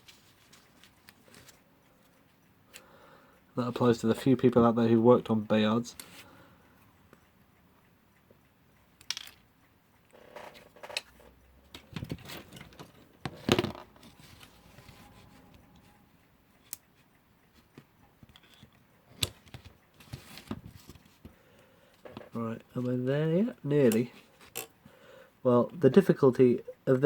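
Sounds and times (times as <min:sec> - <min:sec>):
small metal parts clicking and scraping: 0:09.0 - 0:09.4, 0:10.1 - 0:15.4, 0:18.3 - 0:18.8, 0:23.9 - 0:24.8.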